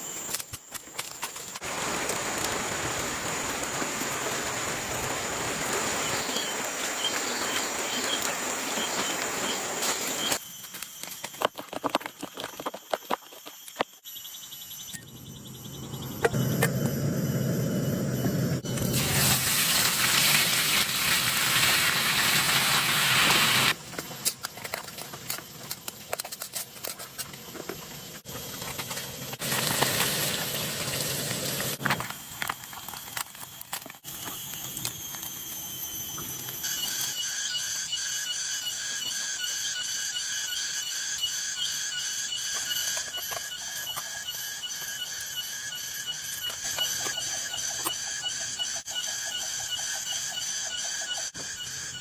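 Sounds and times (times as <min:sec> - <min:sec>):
pulsing insect chorus: 0:00.0 - 0:52.0
heavy rain hissing: 0:01.6 - 0:10.2, 0:18.9 - 0:23.7.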